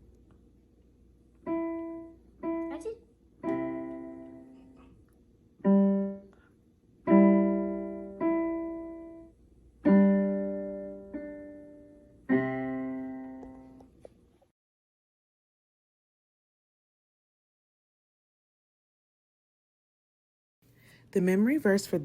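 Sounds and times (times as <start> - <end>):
piano played slowly: 1.4 - 4.8, 5.6 - 6.4, 7.0 - 13.9.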